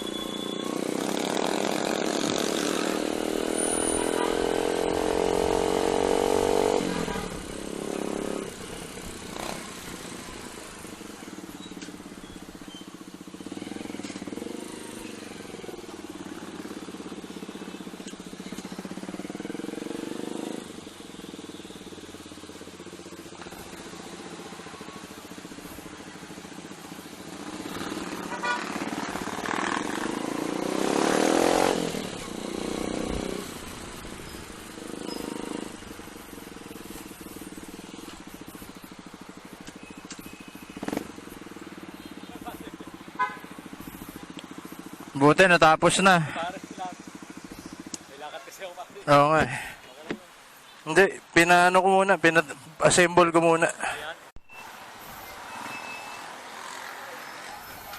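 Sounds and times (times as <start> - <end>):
motorcycle engine running: 0.0 - 45.2, 46.2 - 48.6
traffic noise: 0.0 - 57.9.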